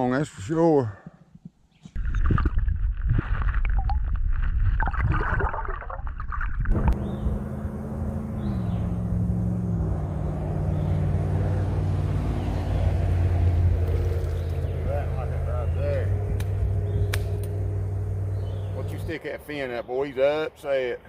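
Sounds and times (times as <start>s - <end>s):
engine running steadily: 6.8s - 19.2s.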